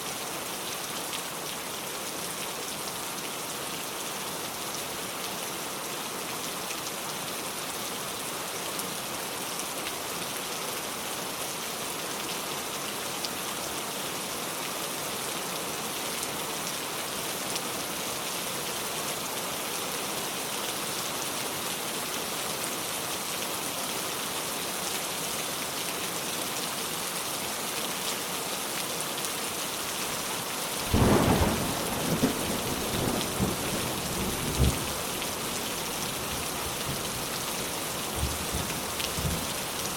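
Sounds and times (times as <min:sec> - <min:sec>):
steady rain falling: 0:00.0 - 0:39.9
thunder crack and rumble: 0:30.9 - 0:35.0.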